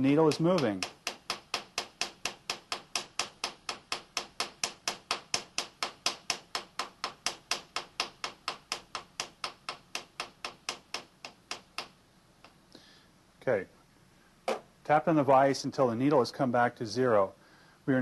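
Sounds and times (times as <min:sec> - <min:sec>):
hammer tapping on metal vise: 0:00.0 - 0:12.6.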